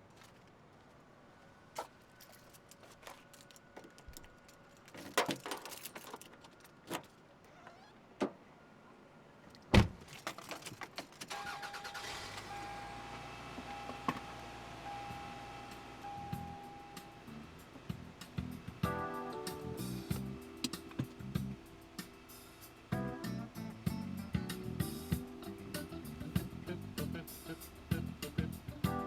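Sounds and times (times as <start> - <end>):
keys jangling: 1.8 - 7.1
car door shutting: 9.7 - 10.0, 11.3 - 17.2, 20.1 - 21.4
dashboard warning chime: 11.3 - 17.3
car engine running: 11.6 - 28.9.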